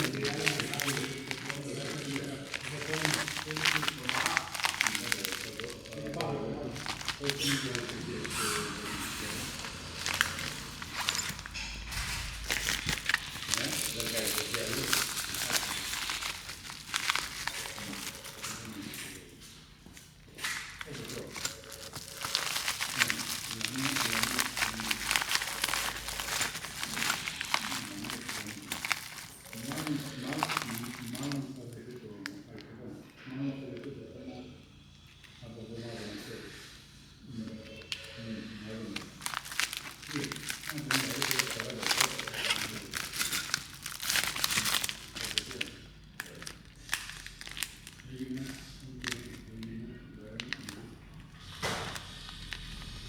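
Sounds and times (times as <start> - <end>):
packaging crinkling and clicking: 0.0 - 32.7, 37.4 - 53.0
indistinct voices: 0.0 - 34.7, 35.3 - 53.0.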